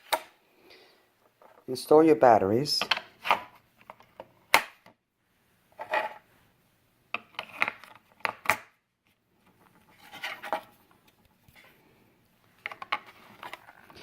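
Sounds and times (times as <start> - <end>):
plastic scraping and rubbing: 9.4 - 11.7, 12.6 - 14.0.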